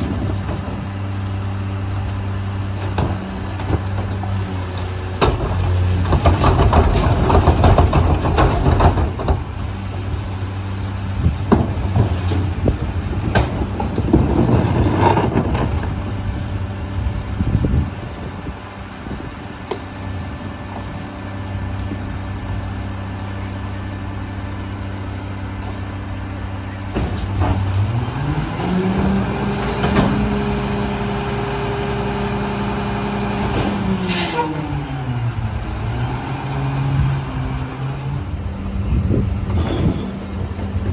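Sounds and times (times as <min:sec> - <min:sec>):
diesel engine and loader running: 0:00.0 - 0:40.9
metal clanks and knocks: 0:05.2 - 0:09.7, 0:26.9 - 0:28.0, 0:39.5 - 0:40.9.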